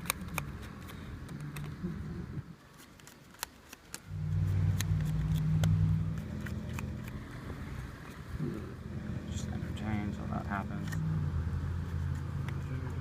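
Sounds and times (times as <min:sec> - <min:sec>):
vehicle engine passing by: 0:04.1 - 0:13.0.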